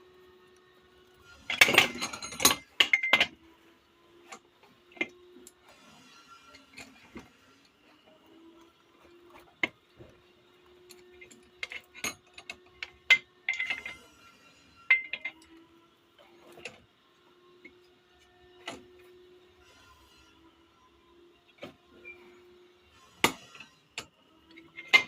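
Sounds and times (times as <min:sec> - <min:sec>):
metal parts clicking and knocking: 0:01.3 - 0:03.4, 0:10.9 - 0:14.2, 0:14.9 - 0:15.5, 0:23.2 - 0:25.0.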